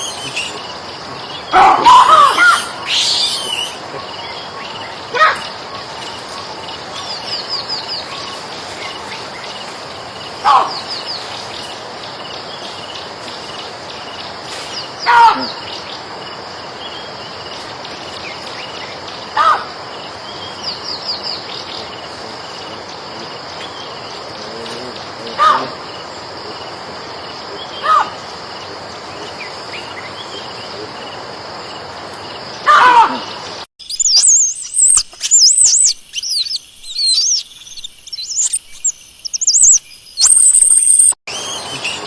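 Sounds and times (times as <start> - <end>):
monkey calling: 0.0 - 9.6, 10.4 - 11.3, 15.0 - 15.8, 19.4 - 19.8, 22.1 - 26.1, 27.6 - 28.5, 32.6 - 37.4, 39.5 - 42.0
insects chirping: 0.0 - 42.0.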